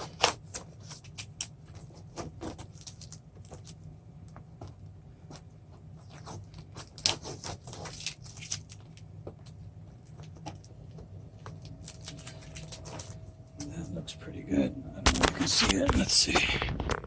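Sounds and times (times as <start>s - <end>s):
tape peeling off plastic sheet: 0.0s - 3.8s, 6.0s - 13.2s
low steady hum: 0.0s - 17.0s.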